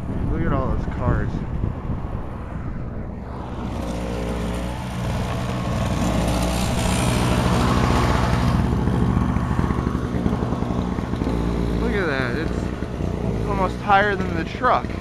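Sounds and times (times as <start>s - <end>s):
motor engine running: 3.3s - 15.0s.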